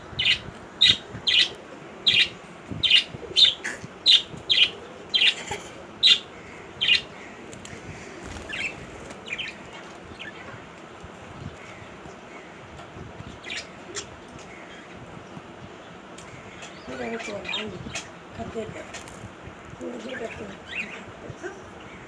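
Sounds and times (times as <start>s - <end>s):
bird chirping: 0.1s - 7.4s.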